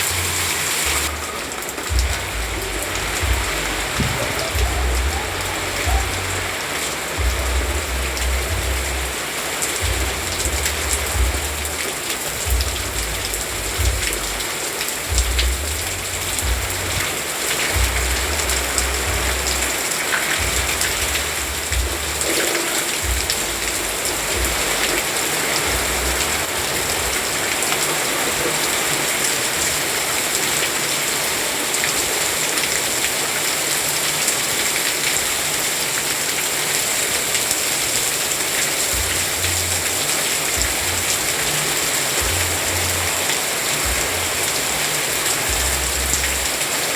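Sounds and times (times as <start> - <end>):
heavy rain falling: 0.0 - 46.9
low rumble: 0.2 - 6.6.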